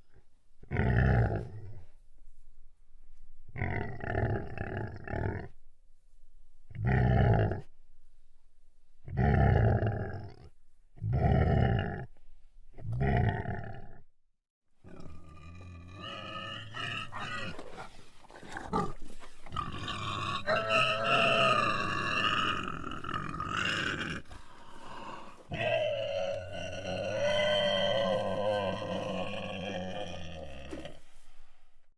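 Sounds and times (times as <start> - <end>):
pig grunting: 0.6 - 1.9, 3.5 - 5.6, 6.7 - 7.7, 9.0 - 12.1, 12.8 - 14.0, 14.8 - 31.1
pig wavering calls: 19.6 - 31.0.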